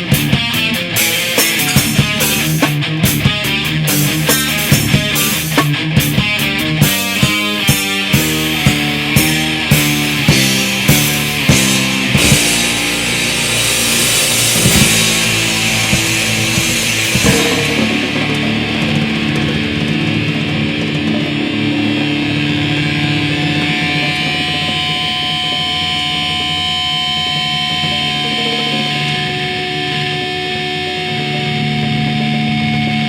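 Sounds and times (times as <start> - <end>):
distorted electric guitar: 0.0 - 33.0
heavy rock band music: 0.0 - 33.0
cymbal wash: 0.2 - 31.2
steady high tone: 9.6 - 30.5.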